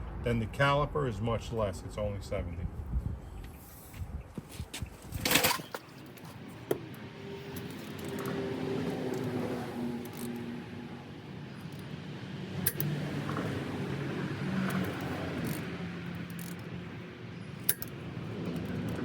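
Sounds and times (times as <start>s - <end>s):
torque wrench clicking: 12.6s - 12.9s, 14.7s - 16.7s, 17.6s - 19.0s.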